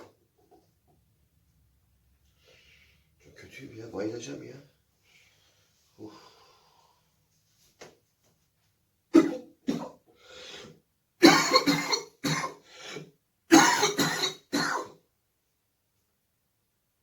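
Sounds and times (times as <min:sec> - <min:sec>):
man coughing: 0:09.2 - 0:10.0, 0:11.2 - 0:12.6, 0:13.5 - 0:15.0.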